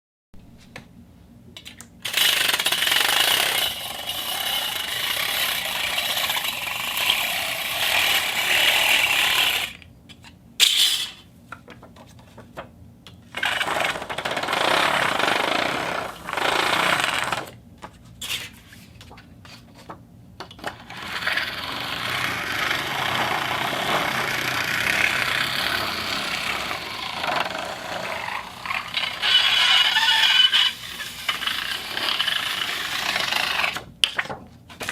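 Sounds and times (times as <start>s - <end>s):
fishing reel cranking: 2.0s - 9.8s, 13.4s - 17.5s, 20.9s - 33.8s.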